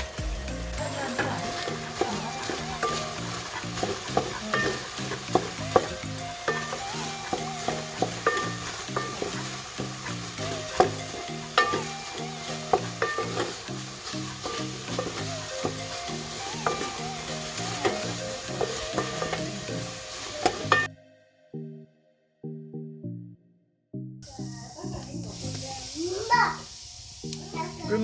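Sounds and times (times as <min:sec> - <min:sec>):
sauce sizzling in a pan: 0:00.0 - 0:20.9, 0:24.2 - 0:28.0
background music: 0:00.0 - 0:26.6
spoon clicking against pan: 0:01.5 - 0:19.7.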